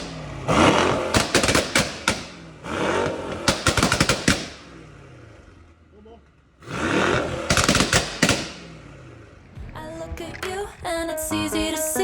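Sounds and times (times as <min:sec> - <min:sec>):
exhaust pops and bangs: 0:00.0 - 0:04.8, 0:06.3 - 0:11.1
car engine revving: 0:00.0 - 0:12.0.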